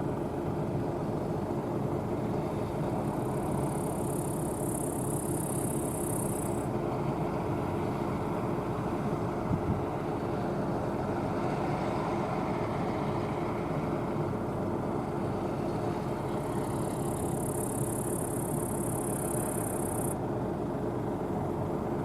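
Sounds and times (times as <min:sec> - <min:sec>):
combine harvester droning: 0:00.0 - 0:22.0
high hiss: 0:16.8 - 0:20.2.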